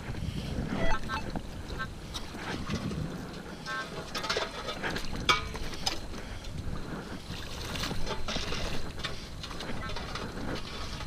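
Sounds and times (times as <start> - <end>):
metal detector beep: 0.8 - 1.3.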